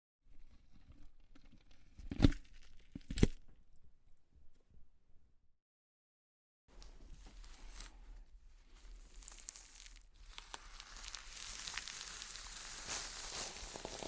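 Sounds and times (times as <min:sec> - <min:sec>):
hide tearing with crackles: 0:08.9 - 0:14.0.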